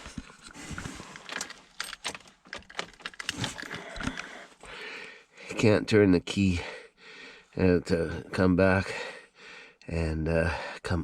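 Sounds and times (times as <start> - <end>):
key ring jangling in ignition: 1.3 - 3.7.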